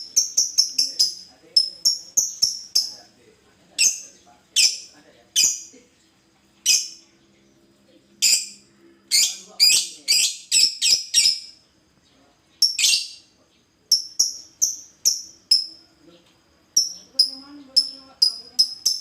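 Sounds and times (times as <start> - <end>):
bird chirping: 0.0 - 19.0.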